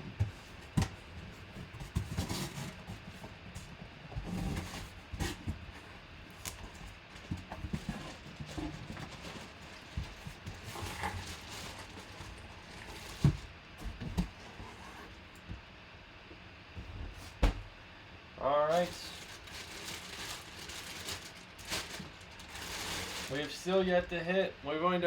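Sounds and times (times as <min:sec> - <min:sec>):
cardboard box rustling: 0:04.3 - 0:15.2, 0:18.7 - 0:23.8.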